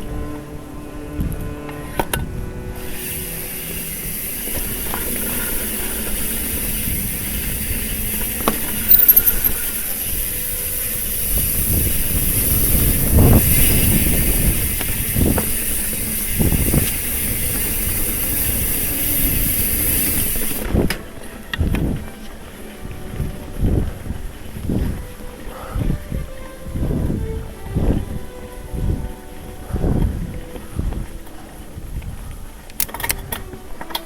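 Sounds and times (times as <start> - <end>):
bike tyres rushing on dirt: 0.2 - 32.7
bike knocks and rattles: 4.4 - 9.8.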